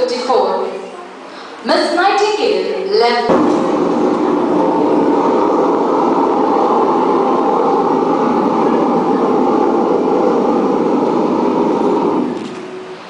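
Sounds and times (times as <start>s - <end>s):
vehicle engine drone: 3.3s - 13.0s.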